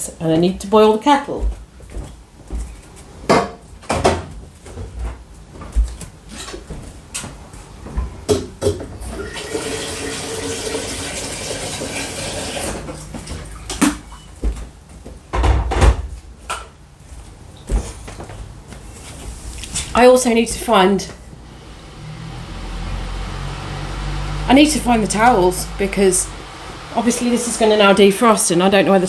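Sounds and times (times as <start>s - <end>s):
knocks and clunks of handling: 3.3s - 9.0s
tap water running into kettle: 9.1s - 13.4s.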